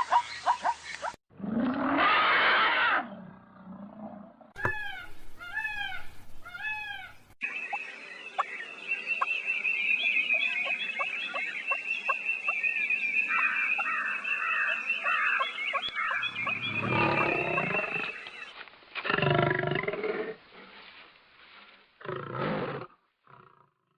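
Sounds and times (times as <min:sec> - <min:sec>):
deep animal roars: 0:01.3 - 0:02.2, 0:02.8 - 0:04.5, 0:16.2 - 0:18.2
arching animal calls: 0:04.6 - 0:07.4, 0:13.4 - 0:18.5.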